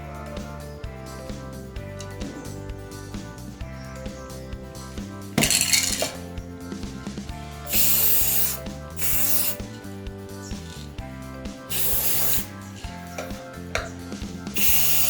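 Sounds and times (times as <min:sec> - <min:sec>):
background music: 0:00.0 - 0:15.0
aerosol spray can hissing: 0:07.7 - 0:09.7, 0:11.7 - 0:13.4, 0:14.5 - 0:15.0.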